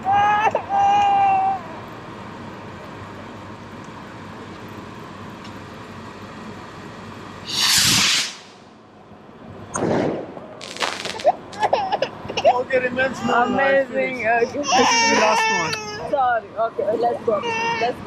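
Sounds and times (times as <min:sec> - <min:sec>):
steady background hiss: 0:05.7 - 0:14.6
firework rocket whoosh: 0:07.4 - 0:08.6, 0:09.7 - 0:11.3
firework sharp cracks: 0:07.5 - 0:08.6, 0:09.7 - 0:11.4.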